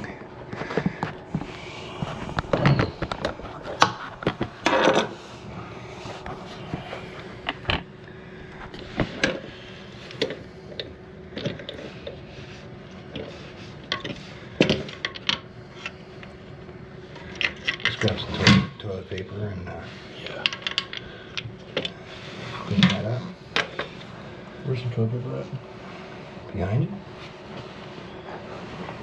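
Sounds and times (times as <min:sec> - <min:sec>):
faint steady hum: 0:00.0 - 0:29.0
tools clicking and scraping: 0:20.3 - 0:21.9.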